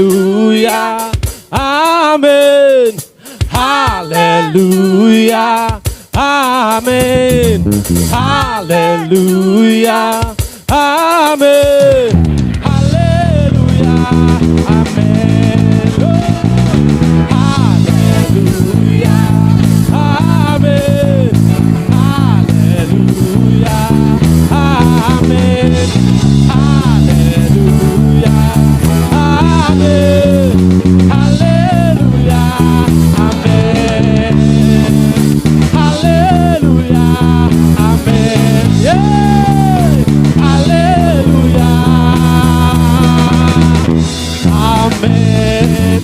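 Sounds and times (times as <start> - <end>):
bass guitar chords: 0.0 - 46.0
sliding bending melody line: 6.8 - 9.7, 12.2 - 46.0
electric guitars: 6.8 - 10.6, 11.6 - 46.0.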